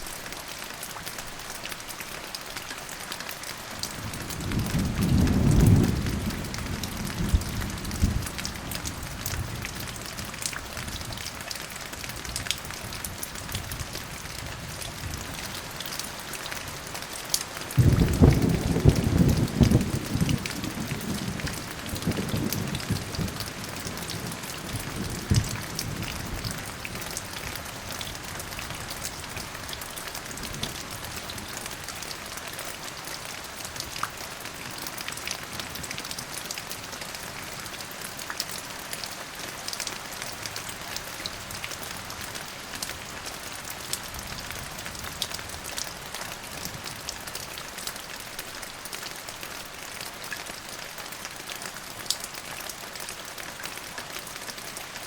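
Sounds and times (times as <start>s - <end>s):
steady rain falling: 0.0s - 55.0s
thunder rumble: 17.8s - 26.6s.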